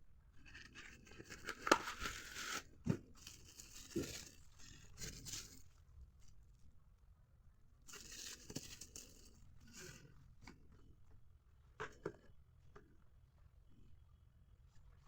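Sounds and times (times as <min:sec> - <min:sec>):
packaging rustling and tearing: 0:01.1 - 0:04.4.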